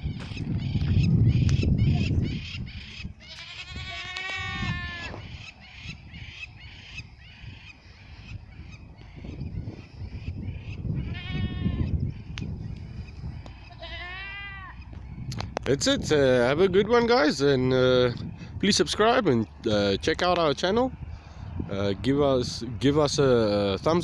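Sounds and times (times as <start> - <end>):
goats bleating: 3.2 - 5.2, 11.0 - 11.9, 13.6 - 14.8.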